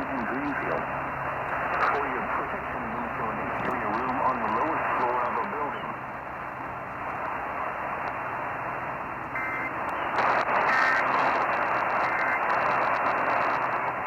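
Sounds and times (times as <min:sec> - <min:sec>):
radio static and hiss: 0:00.0 - 0:14.0
warbling data tone bursts: 0:09.4 - 0:11.3.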